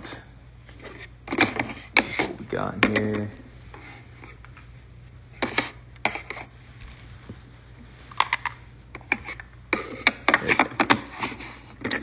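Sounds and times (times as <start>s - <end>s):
trading cards clicking and rustling: 0.7s - 3.4s.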